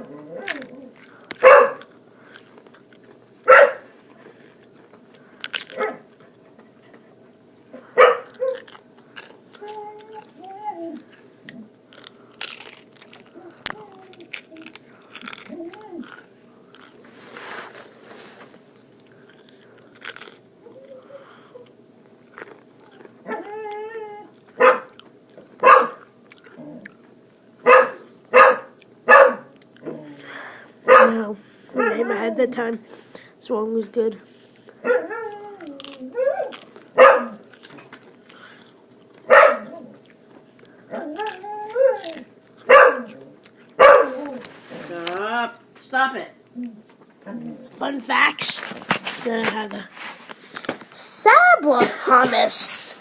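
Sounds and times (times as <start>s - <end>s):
chips being chewed: 0.0s - 3.3s, 4.0s - 7.4s, 8.2s - 27.6s, 35.6s - 45.6s
dog barking: 1.4s - 1.9s, 3.5s - 3.9s, 5.7s - 6.1s, 8.0s - 8.6s, 24.6s - 25.0s, 25.6s - 26.0s, 27.6s - 29.5s, 30.9s - 31.2s, 34.8s - 35.2s, 37.0s - 37.4s, 39.3s - 39.7s, 42.7s - 43.2s, 43.8s - 44.2s.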